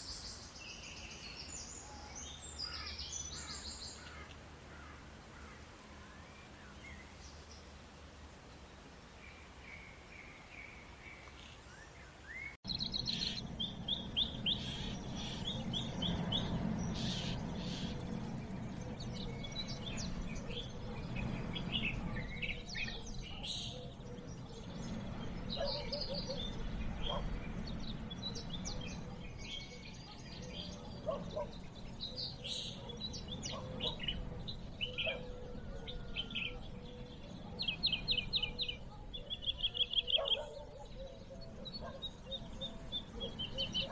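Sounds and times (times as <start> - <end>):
birds chirping and trilling: 0.0 - 7.8, 9.2 - 43.9
steady low background noise: 0.0 - 43.9.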